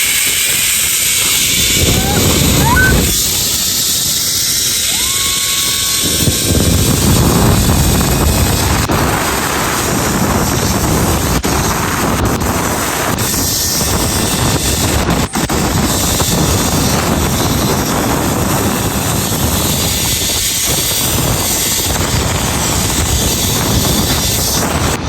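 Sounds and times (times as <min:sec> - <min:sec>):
trolley whining on cable: 0:00.0 - 0:25.0
wind rushing over microphone: 0:00.0 - 0:25.0.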